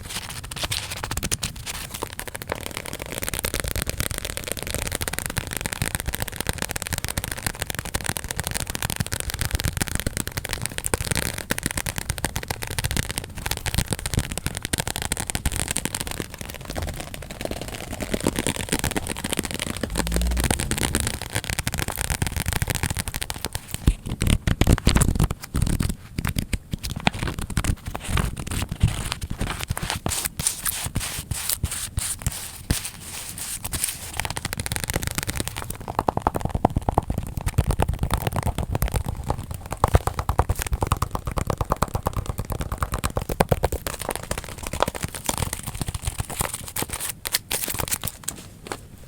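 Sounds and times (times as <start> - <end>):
fast tapping and clicking: 1.0 - 23.9, 33.7 - 46.7.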